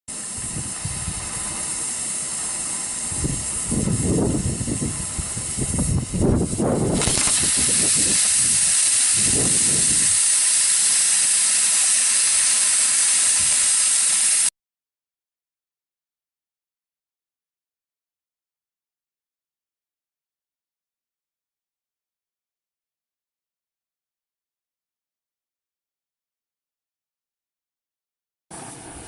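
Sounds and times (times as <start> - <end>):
loud steady hiss: 0.1 - 14.5.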